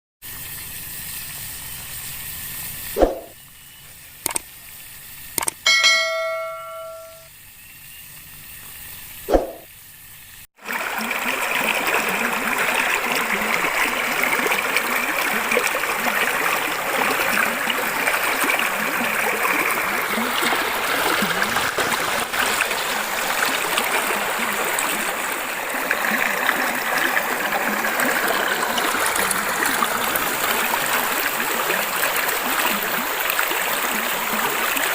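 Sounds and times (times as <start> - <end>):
bell-like chime ringing: 5.6 - 7.3
stream water rushing: 10.6 - 34.9.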